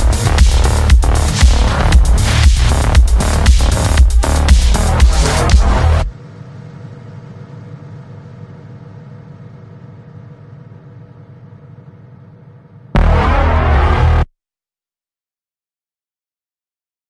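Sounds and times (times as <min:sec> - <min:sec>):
loud music: 0:00.0 - 0:06.1, 0:13.0 - 0:14.3
low steady hum: 0:00.0 - 0:14.2.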